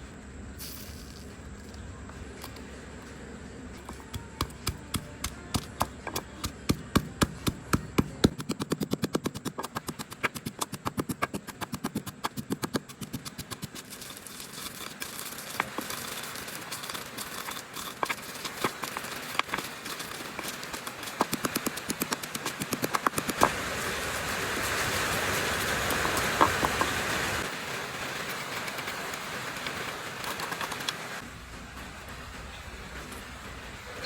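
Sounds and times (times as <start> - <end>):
steady rustling hiss: 0.0 - 4.2, 12.8 - 34.0
rapid sharp knocks: 4.1 - 13.9, 19.4 - 23.6.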